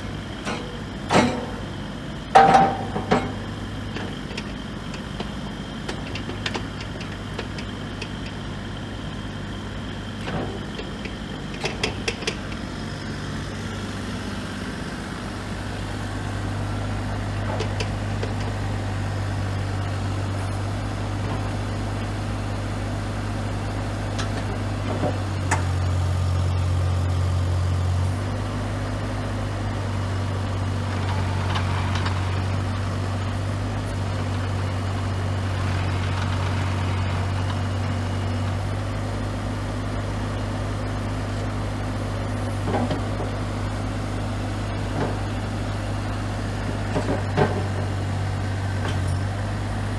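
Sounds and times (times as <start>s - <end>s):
excavator diesel engine running: 0.0s - 49.9s.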